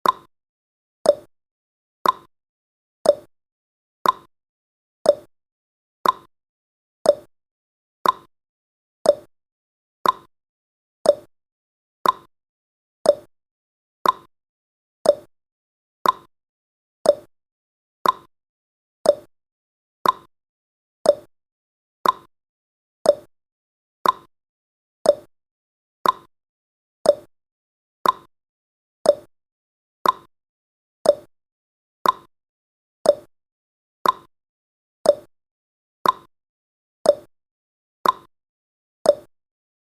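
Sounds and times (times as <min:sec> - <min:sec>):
clock ticking: 0:02.0 - 0:02.3, 0:04.0 - 0:04.3, 0:06.0 - 0:06.3, 0:08.0 - 0:08.3, 0:10.0 - 0:10.3, 0:12.0 - 0:12.3, 0:14.0 - 0:14.3, 0:15.1 - 0:15.3, 0:16.0 - 0:16.3, 0:18.0 - 0:18.3, 0:19.1 - 0:19.3, 0:20.0 - 0:20.3, 0:21.1 - 0:21.3, 0:22.0 - 0:22.3, 0:24.0 - 0:24.3, 0:26.0 - 0:26.3, 0:28.0 - 0:28.3, 0:29.1 - 0:29.3, 0:30.0 - 0:30.3, 0:31.1 - 0:31.3, 0:32.0 - 0:32.3, 0:33.1 - 0:33.3, 0:34.0 - 0:34.3, 0:35.1 - 0:35.3, 0:36.0 - 0:36.3, 0:38.0 - 0:38.3, 0:39.1 - 0:39.3.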